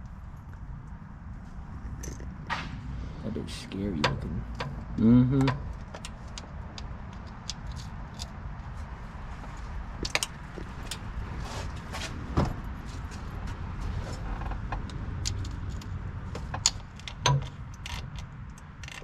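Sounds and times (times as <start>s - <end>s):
steady low rumble: 0.0s - 19.0s.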